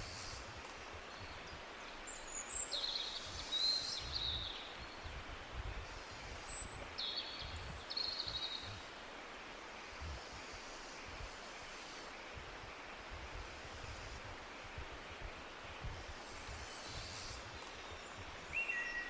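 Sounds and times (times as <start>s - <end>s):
birds chirping and trilling: 0.0s - 5.2s.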